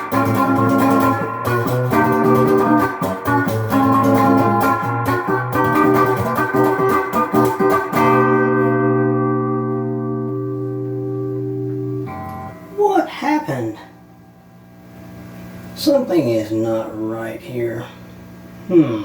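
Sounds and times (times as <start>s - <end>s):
electric guitar playing: 0.0s - 13.0s.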